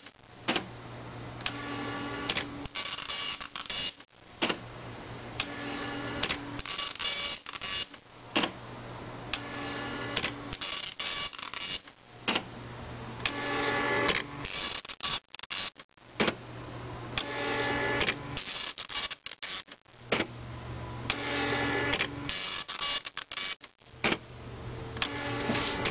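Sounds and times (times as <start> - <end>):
dot matrix printer buzzing: 1.4 - 4.6, 5.4 - 8.6, 9.3 - 12.5, 21.1 - 24.2, 25.0 - 25.9.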